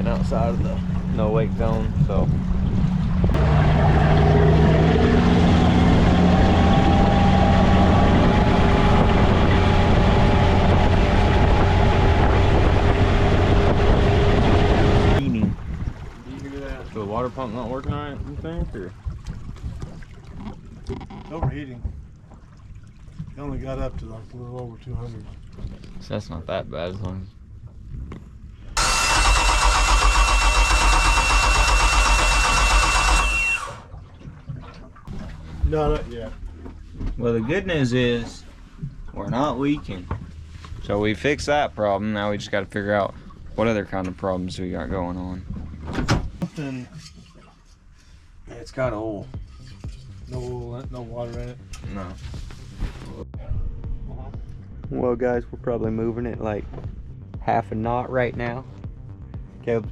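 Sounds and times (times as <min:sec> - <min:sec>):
boat engine running loud: 0:00.0 - 0:15.6, 0:28.8 - 0:34.0
boat engine running: 0:00.0 - 0:24.2, 0:28.7 - 0:47.0
wind rush on microphone: 0:04.9 - 0:16.2.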